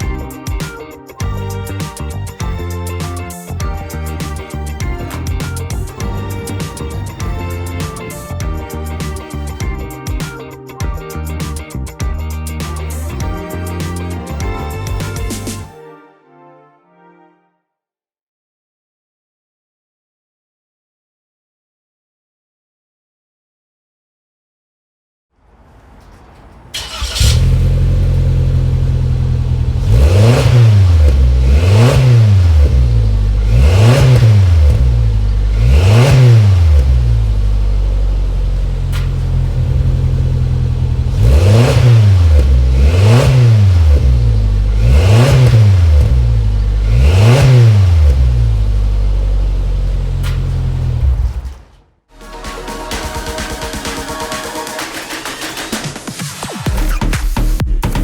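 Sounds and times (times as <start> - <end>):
car engine idling and revving: 1.2 - 9.9, 25.5 - 51.7.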